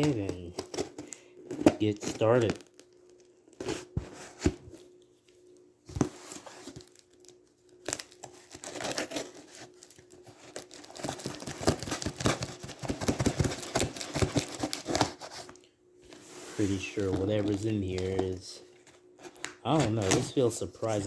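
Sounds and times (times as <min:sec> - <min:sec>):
packaging tearing and crinkling: 0:00.0 - 0:03.9, 0:06.2 - 0:15.6
taps and rustles: 0:11.0 - 0:15.6.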